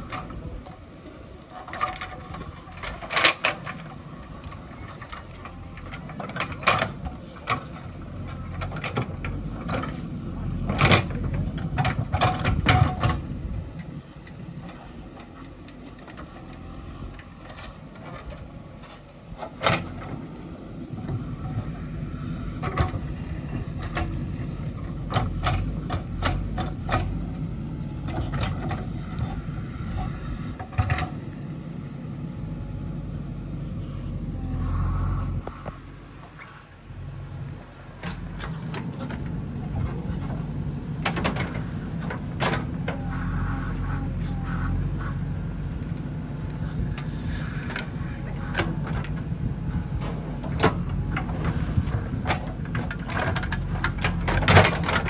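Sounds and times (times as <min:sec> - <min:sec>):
diesel engine running: 0:00.0 - 0:55.0
machine knocks and clanks: 0:01.7 - 0:13.6, 0:49.9 - 0:55.0.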